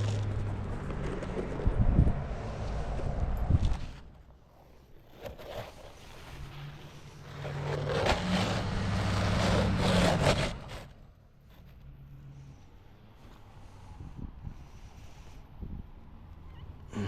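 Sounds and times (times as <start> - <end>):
vehicle engine passing by: 7.0 - 10.9.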